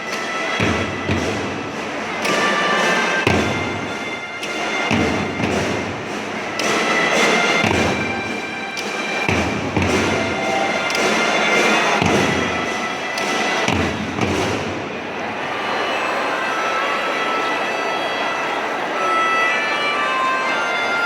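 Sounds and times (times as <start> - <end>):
snare drums and cymbals: 0.0 - 15.2
held melodic tones: 0.0 - 21.0.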